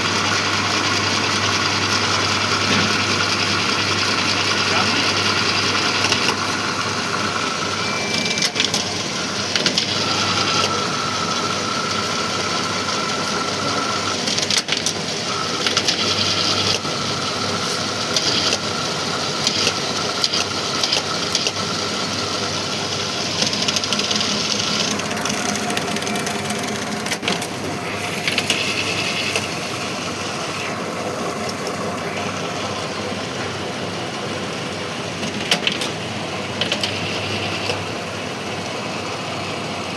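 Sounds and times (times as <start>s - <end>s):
mid-pitched machine whine: 0.0s - 39.9s
strapping machine motor hum: 0.0s - 39.9s.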